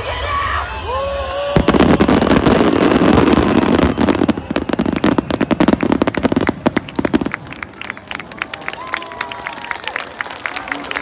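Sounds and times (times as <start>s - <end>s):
fireworks crackling: 1.4s - 9.8s.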